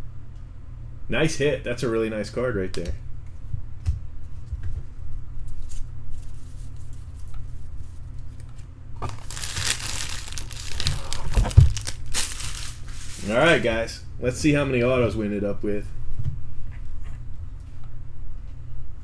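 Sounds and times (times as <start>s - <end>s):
steady low hum: 0.0s - 19.0s
wrapper crinkling and tearing: 9.0s - 13.6s.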